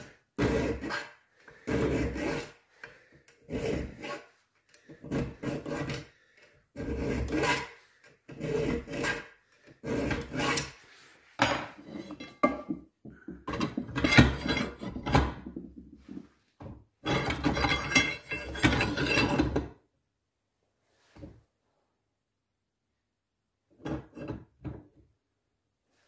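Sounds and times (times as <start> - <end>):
hand scraping and rubbing strokes: 8.7 - 12.2.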